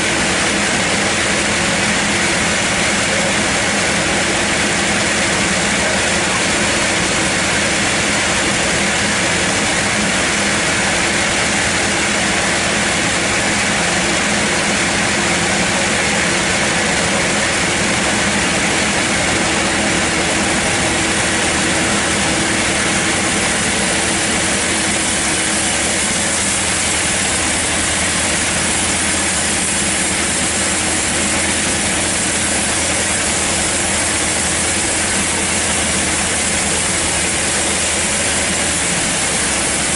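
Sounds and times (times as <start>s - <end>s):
sawmill mechanical drone: 0.0s - 39.9s.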